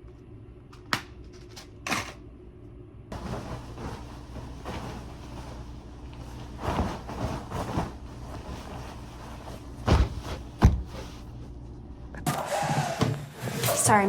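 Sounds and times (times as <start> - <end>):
steady low hum: 0.0 - 14.0
heavy thumps: 3.2 - 11.2.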